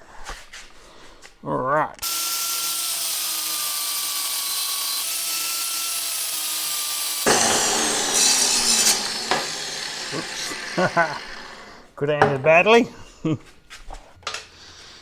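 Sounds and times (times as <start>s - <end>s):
power tool cutting steel rod: 2.0s - 11.8s.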